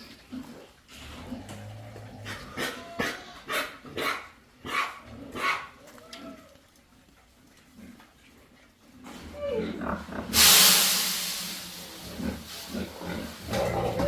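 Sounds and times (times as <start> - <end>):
faint low animal call: 5.8 - 6.7.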